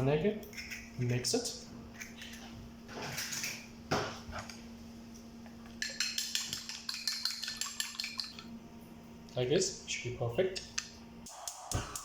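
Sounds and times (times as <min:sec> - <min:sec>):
utensil clicking against bowl: 0:05.7 - 0:08.5.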